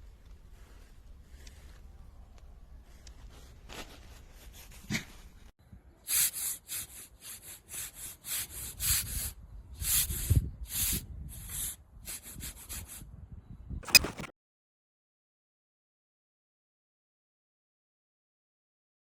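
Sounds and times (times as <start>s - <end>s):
sharp click: 13.8s - 14.3s.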